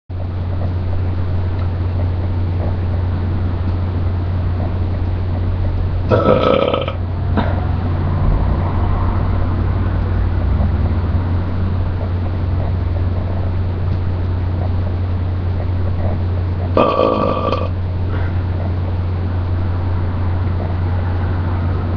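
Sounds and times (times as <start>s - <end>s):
low hum and hiss: 0.1s - 21.9s
person burping: 6.1s - 7.6s, 16.8s - 17.8s.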